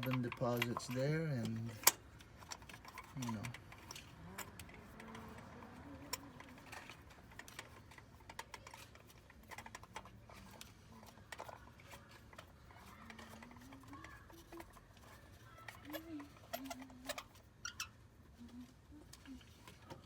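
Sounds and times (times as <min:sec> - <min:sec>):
hand tools clicking and tapping: 0:00.0 - 0:20.0.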